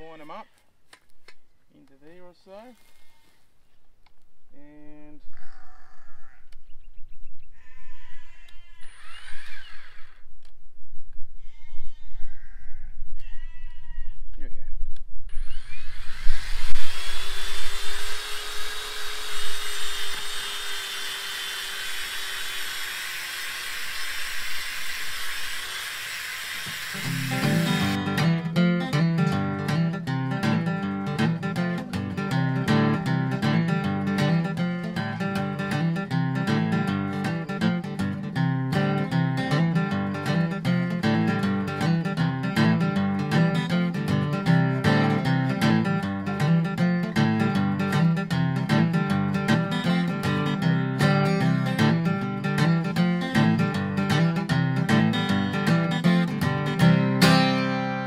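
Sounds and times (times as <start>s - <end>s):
sheep bleating: 5.3s - 6.6s, 7.5s - 9.0s, 11.4s - 14.4s
acoustic guitar strumming: 26.9s - 58.0s.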